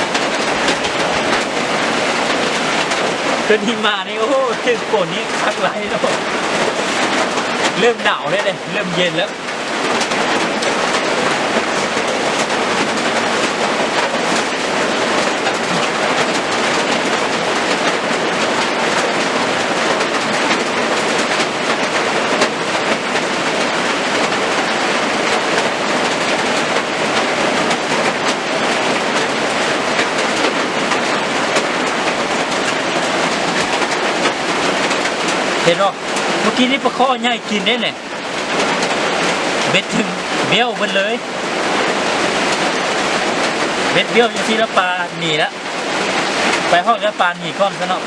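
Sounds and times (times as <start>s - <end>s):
heavy rain pouring: 0.0s - 48.0s.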